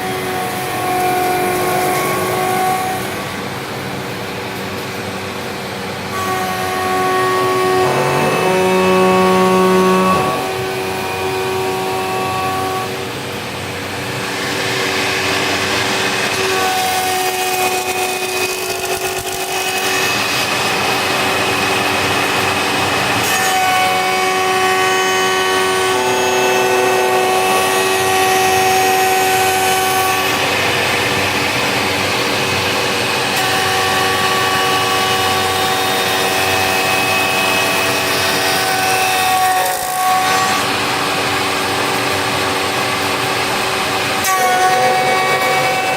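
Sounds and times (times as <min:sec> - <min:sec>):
tool cutting wood: 0:00.0 - 0:03.2, 0:06.2 - 0:12.9, 0:14.1 - 0:31.1, 0:33.2 - 0:45.9
machine whine: 0:00.0 - 0:45.9
short rising tone: 0:06.9 - 0:10.8.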